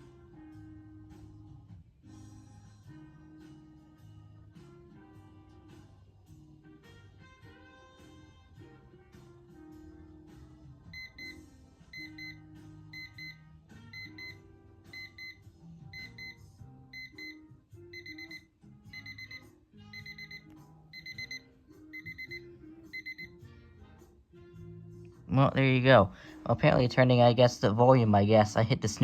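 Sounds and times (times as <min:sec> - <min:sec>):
alarm clock beeping: 0:10.9 - 0:23.4.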